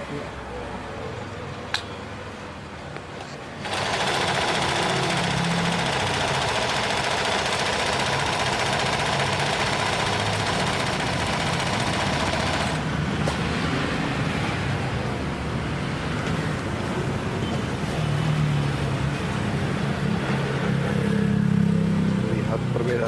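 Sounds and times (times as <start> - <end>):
sewing machine running: 3.6 - 12.9.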